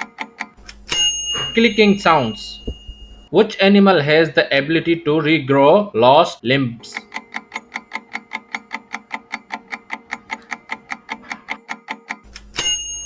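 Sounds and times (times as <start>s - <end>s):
rapid timer ticking: 0.0s - 0.6s, 6.8s - 12.3s
ringing chime: 0.9s - 3.3s, 12.6s - 13.0s.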